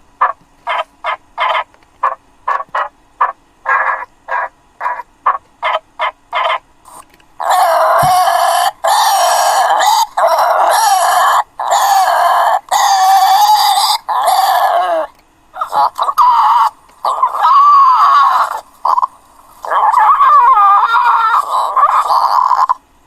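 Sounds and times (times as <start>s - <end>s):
creature chirps: 6.4s - 22.8s
harsh screeching calls: 7.4s - 22.8s.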